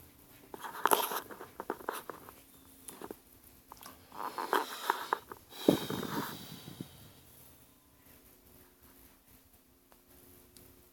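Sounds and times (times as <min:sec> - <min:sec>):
objects rustling: 0:00.4 - 0:06.9
objects scraping: 0:04.1 - 0:06.8.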